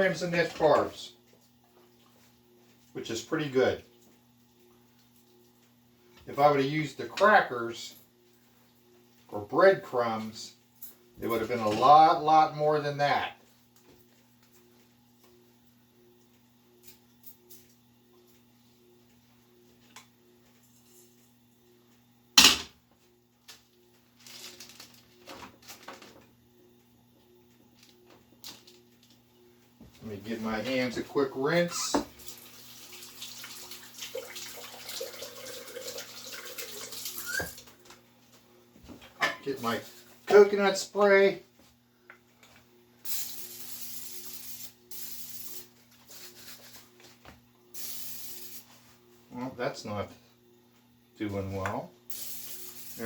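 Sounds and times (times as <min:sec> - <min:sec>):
aerosol spray sputtering: 0:52.1 - 0:53.0.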